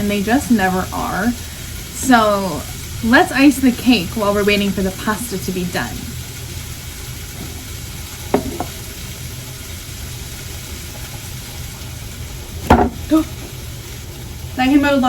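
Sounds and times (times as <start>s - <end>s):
meat sizzling in a frying pan: 0.0s - 15.0s
knocks: 8.3s - 8.8s, 12.7s - 13.1s.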